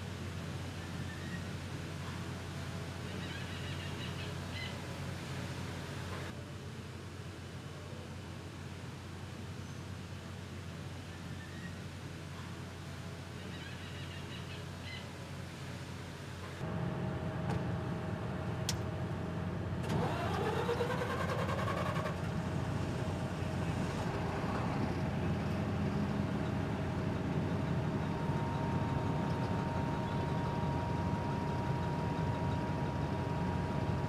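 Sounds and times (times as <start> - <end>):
engine running: 16.6 - 34.0.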